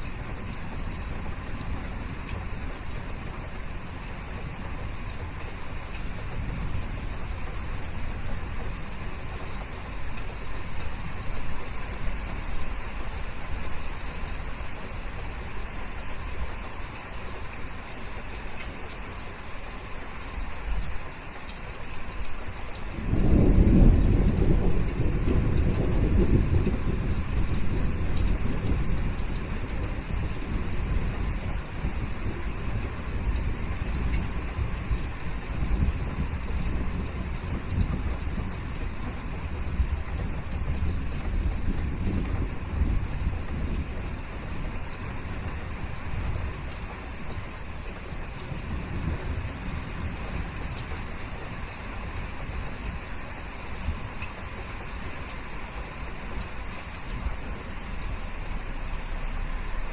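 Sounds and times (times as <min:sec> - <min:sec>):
steady rain falling: 0:00.0 - 0:59.9
low rumble of thunder: 0:00.1 - 0:14.7, 0:22.8 - 0:55.4.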